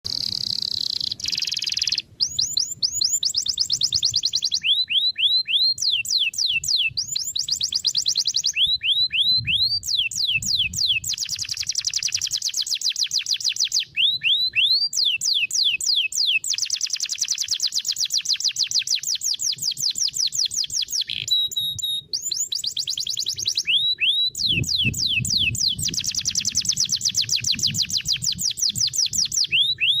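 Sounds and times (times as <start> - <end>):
canary singing: 0.0 - 30.0.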